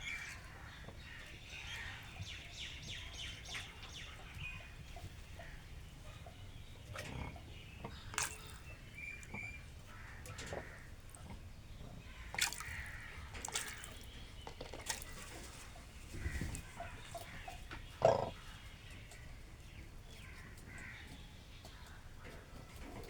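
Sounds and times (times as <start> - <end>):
faint bird calls: 0.0 - 19.4
birds splashing in water: 0.0 - 23.0
water dripping: 6.9 - 15.6.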